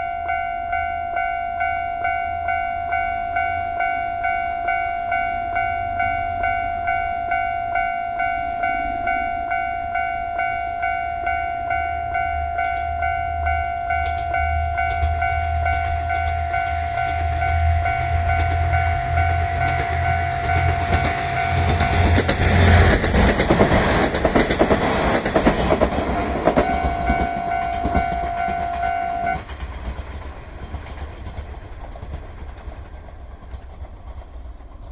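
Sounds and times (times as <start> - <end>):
crossing warning bell ringing: 0.0 - 29.7
diesel railcar rumbling: 0.0 - 34.9
train wheel clatter: 13.9 - 34.9.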